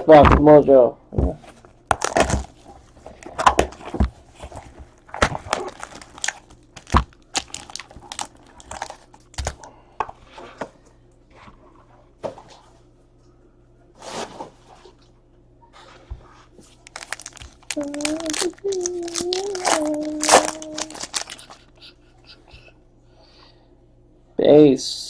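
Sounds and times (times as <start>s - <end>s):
packaging crinkling and tearing: 1.4s - 9.7s, 16.7s - 21.6s.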